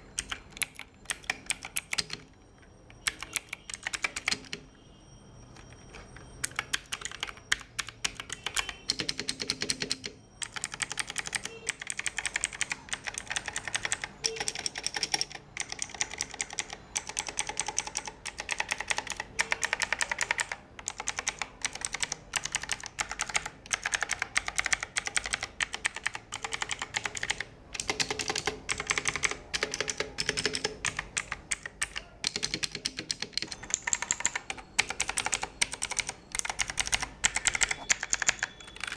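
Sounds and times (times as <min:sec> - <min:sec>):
fast typing on mechanical keyboard: 0:00.0 - 0:04.7, 0:05.5 - 0:38.9.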